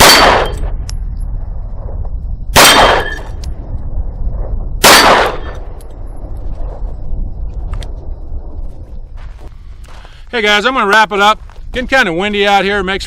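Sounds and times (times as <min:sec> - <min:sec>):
pistol shots with echo: 0:00.0 - 0:00.7, 0:02.5 - 0:03.3, 0:04.8 - 0:05.6
wind rumbling on microphone: 0:00.0 - 0:13.0.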